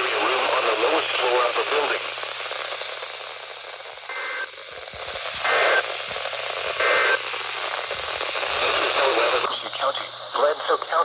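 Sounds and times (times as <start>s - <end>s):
radio hiss: 0.0s - 11.0s.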